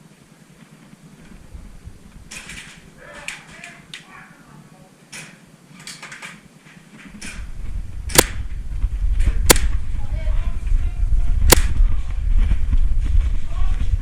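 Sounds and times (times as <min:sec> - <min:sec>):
loud low rumble: 0:07.5 - 0:14.0
airsoft gun shots: 0:08.1 - 0:08.4, 0:09.4 - 0:09.8, 0:11.4 - 0:11.8.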